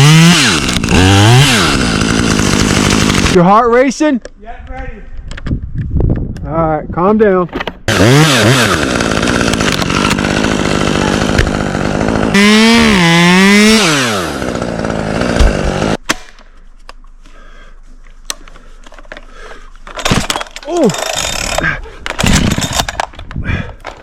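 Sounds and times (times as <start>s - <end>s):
chainsaw cutting at full throttle: 0.0s - 3.4s, 7.9s - 16.0s, 20.0s - 23.0s.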